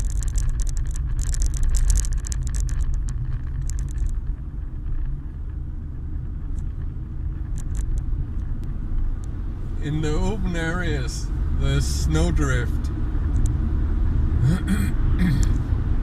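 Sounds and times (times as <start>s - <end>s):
fine ticks patter: 0.0s - 5.6s
tyre and engine rumble: 0.0s - 16.0s.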